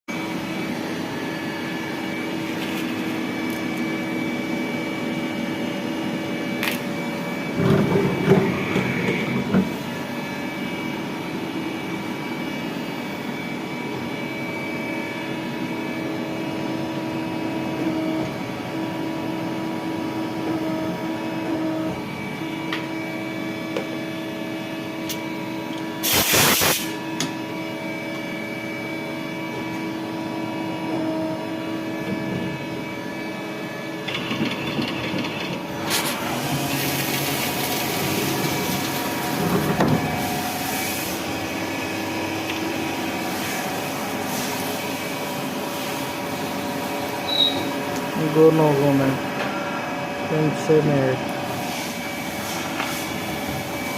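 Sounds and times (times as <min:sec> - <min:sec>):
lathe machine hum: 0:00.1 - 0:25.9, 0:27.3 - 0:53.9
short loud hiss: 0:26.0 - 0:27.0.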